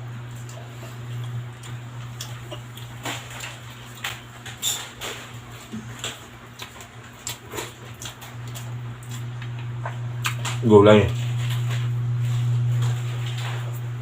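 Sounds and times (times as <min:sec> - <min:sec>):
chewing and lip-smacking: 0:00.3 - 0:13.6.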